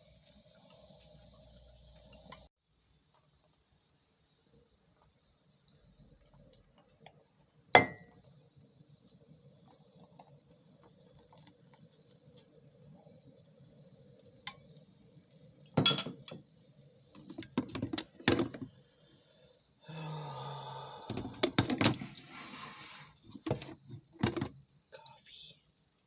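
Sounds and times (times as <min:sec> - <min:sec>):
dishes knocking and clinking: 0:07.8 - 0:08.1, 0:15.8 - 0:16.5, 0:17.2 - 0:18.7, 0:21.1 - 0:22.1, 0:23.4 - 0:24.6
kitchenware clatter: 0:15.8 - 0:16.4.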